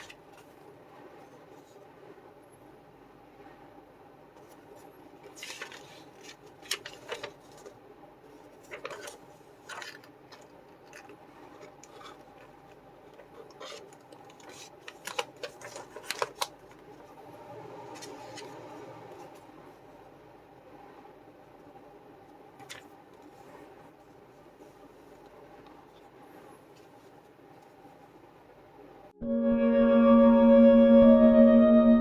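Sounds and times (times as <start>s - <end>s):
plastic parts rustling: 5.2s - 7.8s, 8.4s - 17.0s.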